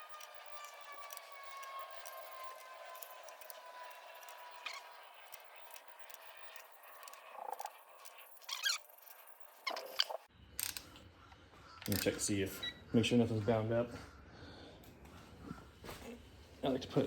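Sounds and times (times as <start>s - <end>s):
sharp metallic clicks: 9.7s - 11.0s, 11.8s - 12.1s.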